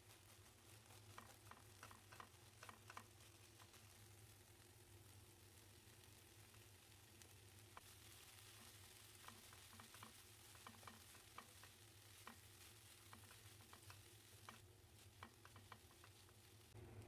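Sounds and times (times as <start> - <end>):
food preparation clicks and taps: 0.1 - 4.4, 6.0 - 17.0
steady low hum: 16.6 - 17.0.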